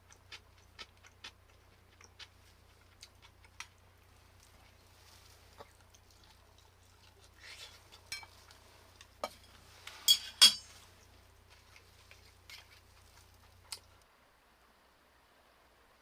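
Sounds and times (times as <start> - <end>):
dishes and utensils clinking: 7.9 - 8.4, 9.2 - 10.8.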